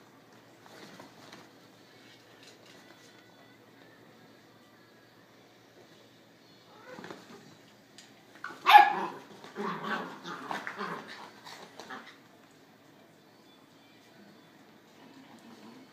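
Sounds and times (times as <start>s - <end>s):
dog barking: 8.6s - 9.2s.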